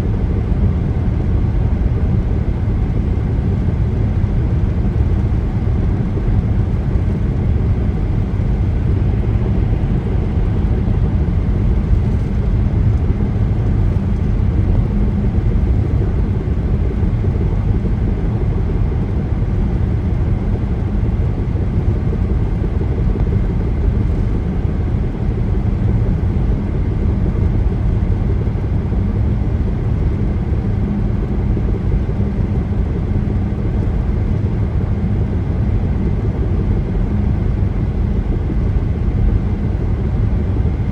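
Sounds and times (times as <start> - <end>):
faint engine hum: 0.0 - 40.9.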